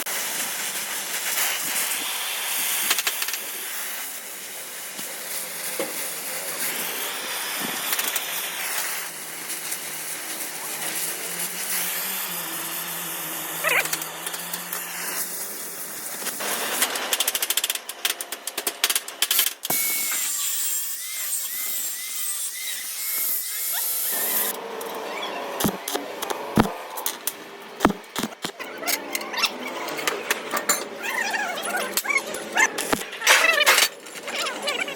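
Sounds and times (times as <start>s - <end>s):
welding hiss with crackle: 0.0s - 24.6s, 32.8s - 34.9s.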